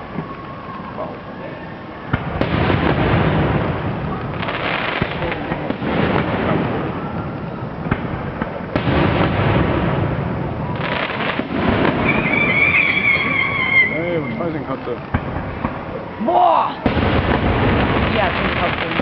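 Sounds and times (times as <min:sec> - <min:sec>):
fireworks crackling and booming: 0:00.0 - 0:19.0
sharp firework bang: 0:02.1 - 0:14.5, 0:16.8 - 0:19.0.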